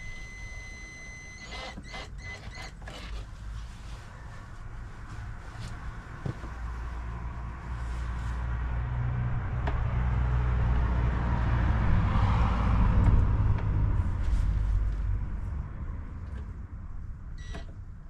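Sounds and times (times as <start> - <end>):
motor vehicle passing by: 5.1 - 16.2.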